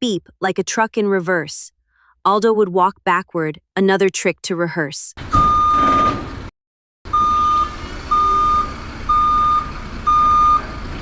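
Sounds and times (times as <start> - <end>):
truck reversing beeper: 5.3 - 6.5, 7.1 - 11.0
low vehicle rumble: 7.1 - 11.0.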